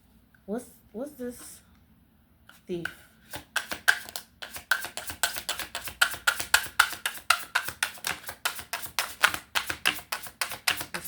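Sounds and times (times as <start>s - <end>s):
cards being shuffled: 2.5s - 11.0s.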